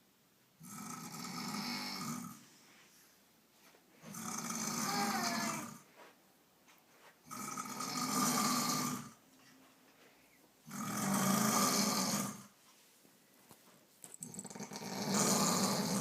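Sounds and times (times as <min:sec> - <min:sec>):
person snoring: 0:00.6 - 0:02.4, 0:04.1 - 0:05.8, 0:07.3 - 0:09.2, 0:10.7 - 0:12.5, 0:14.2 - 0:16.0.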